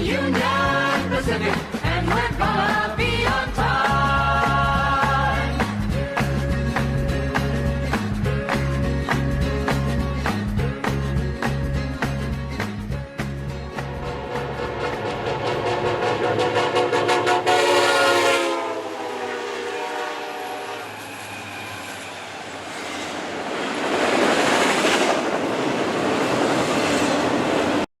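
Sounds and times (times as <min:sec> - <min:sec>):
wheels rushing on rails: 0:05.6 - 0:27.9
train horn blast: 0:13.8 - 0:21.8.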